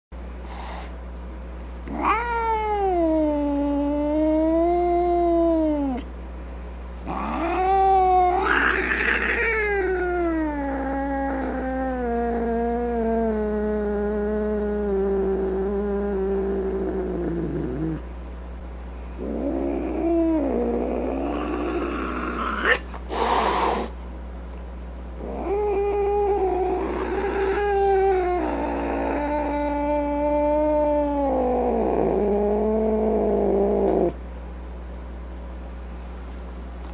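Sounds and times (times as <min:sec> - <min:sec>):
cat yowling: 0:01.9 - 0:06.0, 0:07.1 - 0:16.0, 0:19.2 - 0:23.9, 0:25.2 - 0:33.2.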